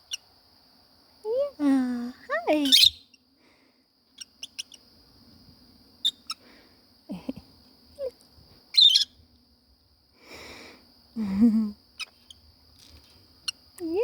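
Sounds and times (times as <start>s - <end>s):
lovebirds chirping: 1.7s - 3.2s, 4.2s - 4.9s, 8.7s - 9.2s.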